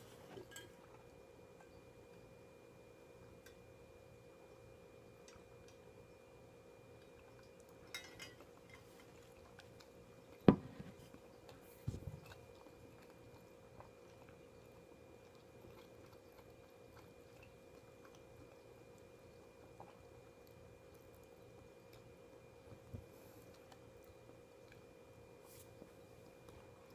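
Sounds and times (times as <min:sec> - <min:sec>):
faint hum: 0:00.0 - 0:26.9
dull thump: 0:10.5 - 0:11.0.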